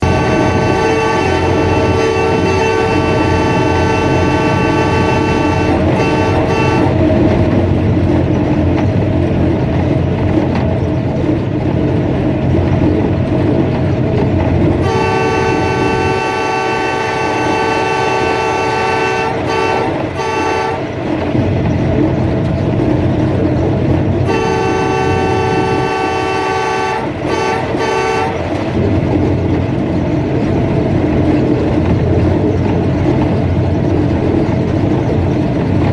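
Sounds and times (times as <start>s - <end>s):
locomotive air horn blasts: 0.0s - 7.8s, 14.7s - 21.6s, 24.2s - 29.2s
train engine and wheels rumbling: 0.0s - 35.9s.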